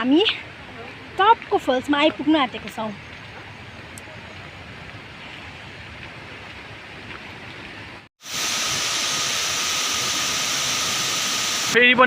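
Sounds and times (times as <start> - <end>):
light rain: 0.1 - 8.1.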